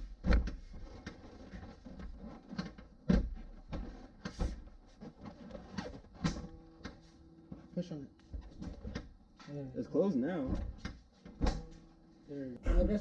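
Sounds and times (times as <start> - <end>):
car panel knocks and thumps: 10.5 - 11.9.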